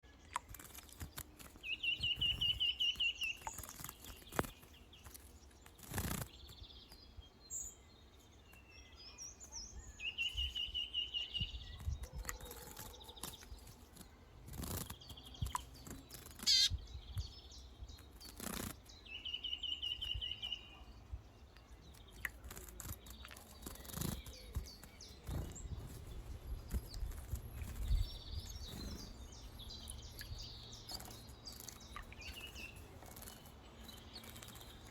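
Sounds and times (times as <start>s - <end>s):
bird chirps: 0.0s - 34.9s
songbird buzzy trill: 13.2s - 20.7s, 22.0s - 34.9s.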